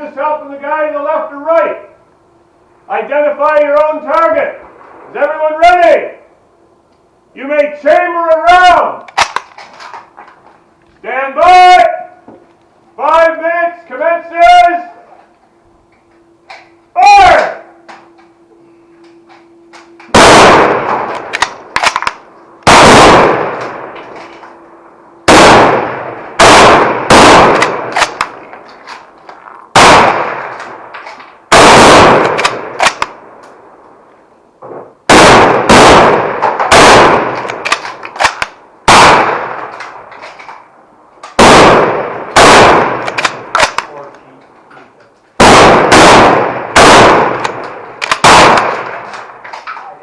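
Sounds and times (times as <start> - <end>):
rifle shots with echo: 20.1 - 24.3, 25.2 - 28.4, 29.7 - 30.9, 31.5 - 33.4, 35.1 - 39.8, 41.3 - 44.0, 45.4 - 49.4
light rifle clicks: 21.1 - 22.3, 32.2 - 33.6, 37.4 - 38.6, 43.0 - 44.2, 47.4 - 49.8.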